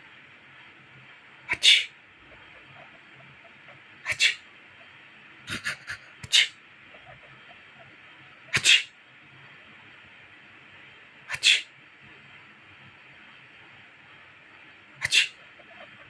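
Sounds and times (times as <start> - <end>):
person sneezing: 8.6 - 8.9, 15.0 - 15.4.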